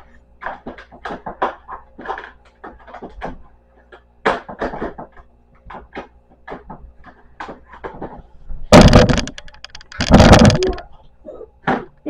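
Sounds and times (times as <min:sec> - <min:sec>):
crayons clattering: 0:08.8 - 0:10.9
crayons clicking and tapping: 0:08.8 - 0:10.9.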